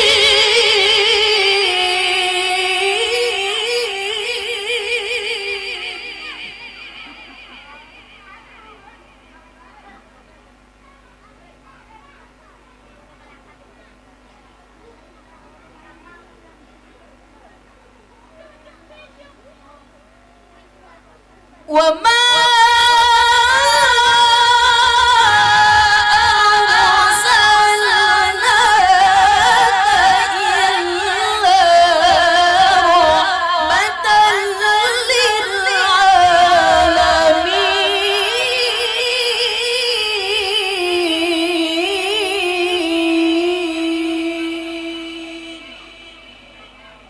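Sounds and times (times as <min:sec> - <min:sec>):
woman reciting melodically: 0:00.0 - 0:11.6, 0:21.2 - 0:47.0.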